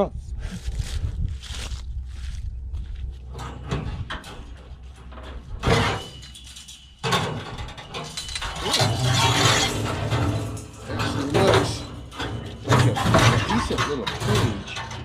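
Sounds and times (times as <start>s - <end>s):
sudden clatter: 3.3s - 15.0s.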